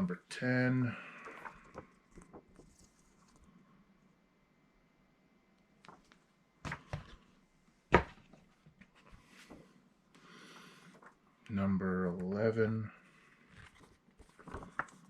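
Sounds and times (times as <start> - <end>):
paper rustle: 1.1 - 3.6, 13.1 - 15.0.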